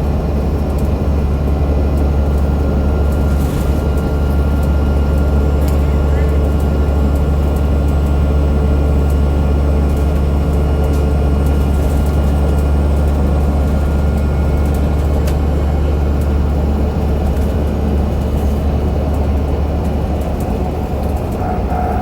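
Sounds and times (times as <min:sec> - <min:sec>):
bus diesel engine drone: 0:00.0 - 0:22.0
faint high axle whine: 0:21.3 - 0:22.0.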